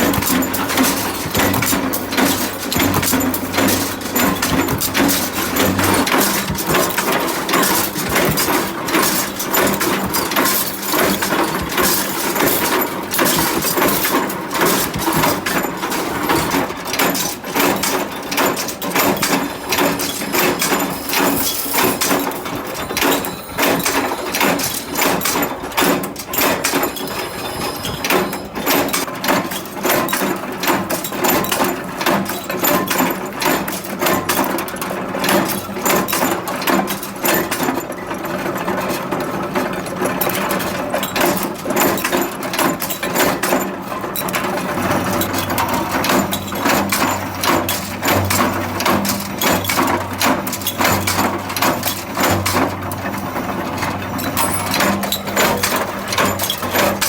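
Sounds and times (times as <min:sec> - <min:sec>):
machinery running: 0:00.0 - 0:29.0, 0:44.2 - 0:57.0
clatter of knocks and metal clinks: 0:00.0 - 0:57.0.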